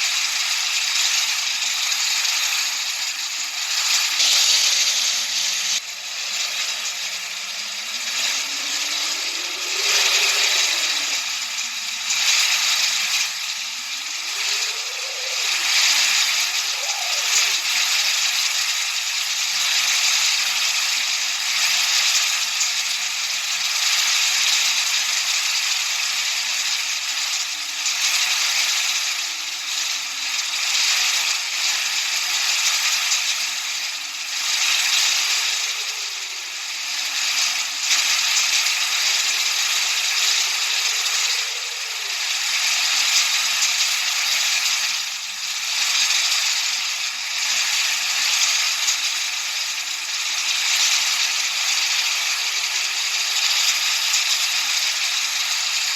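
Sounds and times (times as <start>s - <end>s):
dense grainy hiss: 0.0s - 22.8s, 23.7s - 55.8s.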